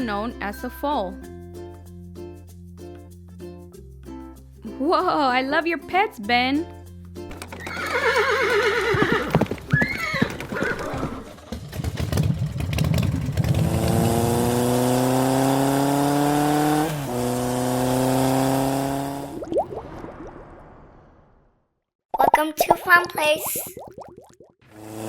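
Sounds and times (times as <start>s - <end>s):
horse whinnying: 7.4s - 11.5s
car engine accelerating: 11.5s - 19.4s.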